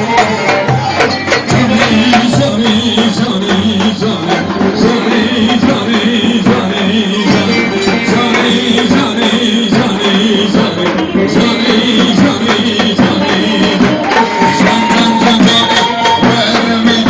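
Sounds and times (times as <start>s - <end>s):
steady drumming: 0.0s - 17.0s
wavering melody line: 0.8s - 16.6s.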